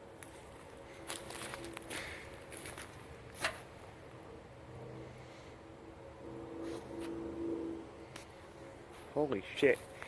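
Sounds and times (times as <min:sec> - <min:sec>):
footsteps through forest litter: 0:00.0 - 0:03.9
twigs crackling and snapping: 0:00.1 - 0:04.3.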